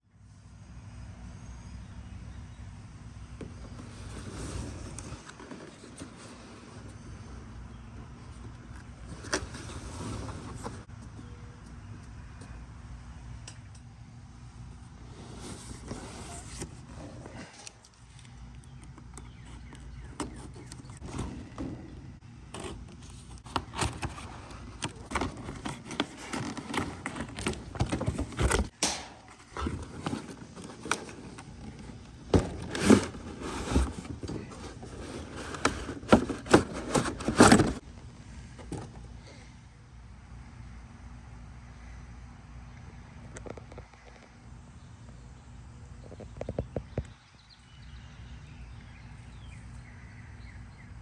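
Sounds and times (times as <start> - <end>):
packaging scraping and rustling: 15.1 - 17.9, 22.5 - 37.8.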